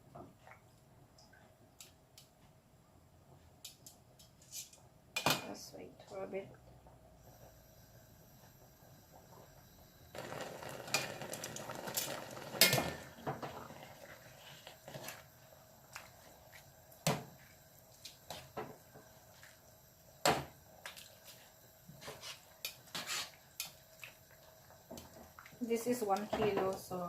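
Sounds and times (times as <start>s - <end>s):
rustling and scraping: 21.2s - 23.4s.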